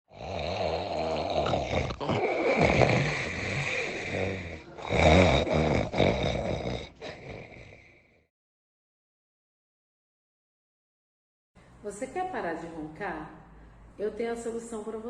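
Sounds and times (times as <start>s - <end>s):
person snoring loudly: 0.1s - 8.3s.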